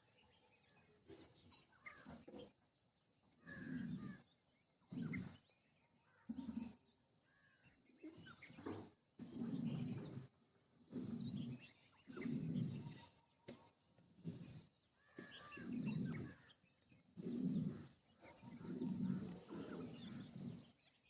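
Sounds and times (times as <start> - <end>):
sparrows chirping: 0.0 - 21.0
pigeons cooing: 10.9 - 13.2, 14.2 - 20.8.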